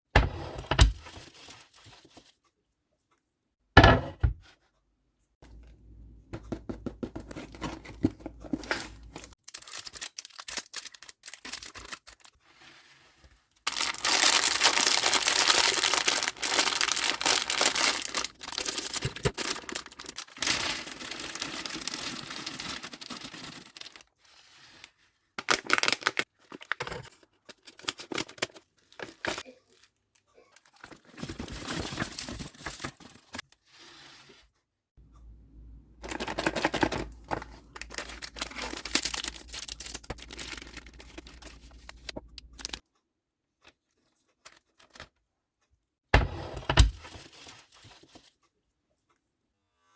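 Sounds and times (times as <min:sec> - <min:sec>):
plastic packaging crinkling: 0:07.5 - 0:12.4, 0:13.6 - 0:24.1, 0:25.4 - 0:29.4, 0:36.0 - 0:42.8.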